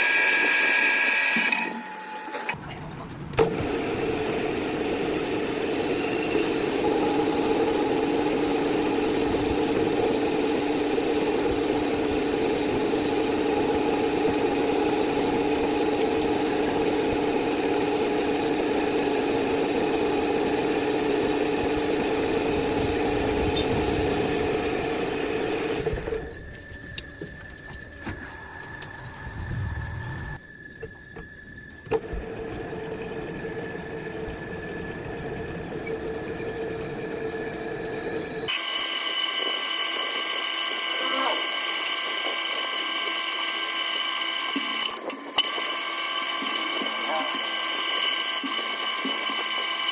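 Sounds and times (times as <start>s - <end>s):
metal lathe humming: 3.5s - 26.2s, 32.1s - 49.9s.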